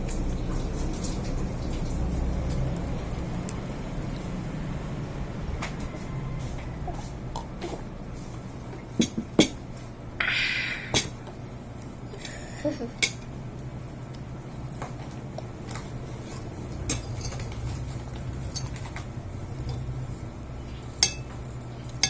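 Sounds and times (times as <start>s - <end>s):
cutlery clinking on a plate: 21.0s - 21.4s.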